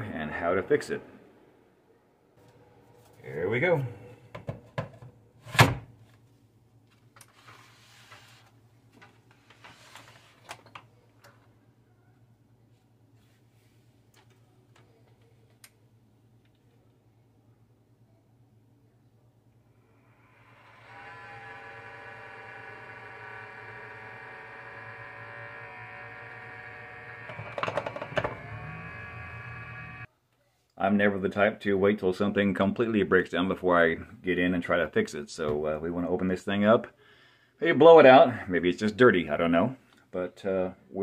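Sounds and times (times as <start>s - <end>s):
low electric hum: 5.1s - 30.3s
soft scraping: 7.3s - 8.6s
charger cooling fan hum: 19.8s - 30.1s.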